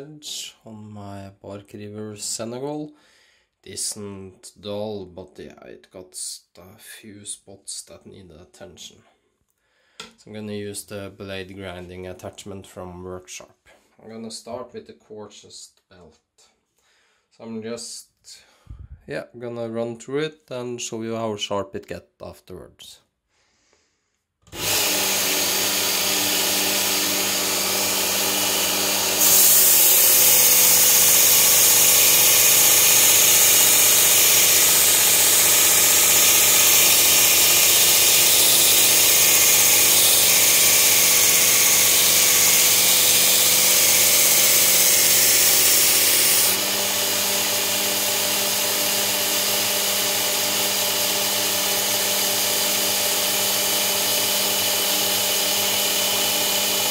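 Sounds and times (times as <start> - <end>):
sharpener motor humming: 24.5 - 56.9.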